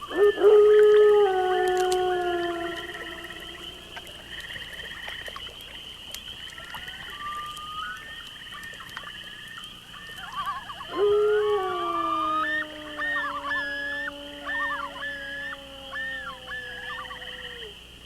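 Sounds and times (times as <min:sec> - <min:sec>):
wolves howling: 0:00.0 - 0:04.4, 0:10.1 - 0:17.8
wolves yipping: 0:11.8 - 0:17.7.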